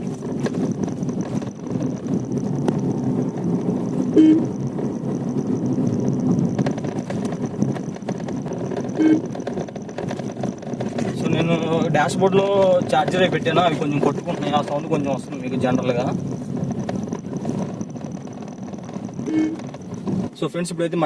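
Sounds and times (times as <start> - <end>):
charger rattling on dashboard: 0.0 - 21.0
road and engine rumble: 0.0 - 21.0
short beeps: 3.8 - 6.4, 8.6 - 9.5, 19.0 - 19.8.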